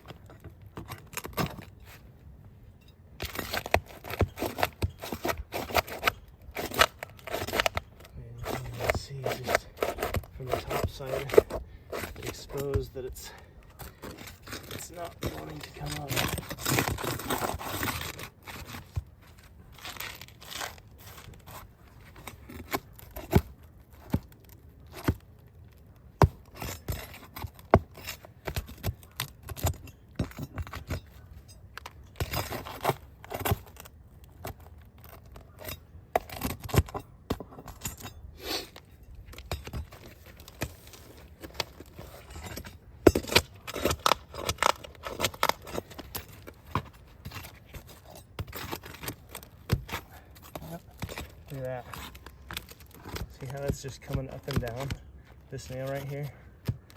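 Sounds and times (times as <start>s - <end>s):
shingles scraping and tearing: 0.0s - 2.2s, 3.1s - 56.9s.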